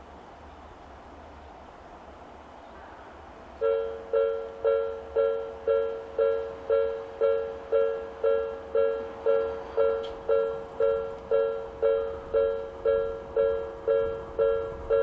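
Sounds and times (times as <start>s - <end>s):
level-crossing warning alarm dinging: 3.6s - 15.0s.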